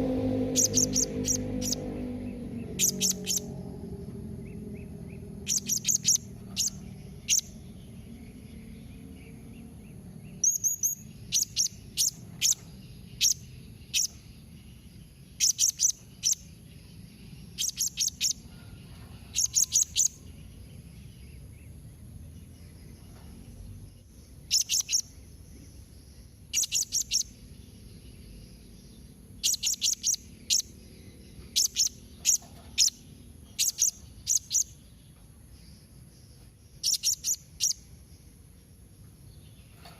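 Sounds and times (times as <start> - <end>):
parrot high-pitched calls: 0.4 - 1.8, 2.7 - 3.5, 5.4 - 7.5.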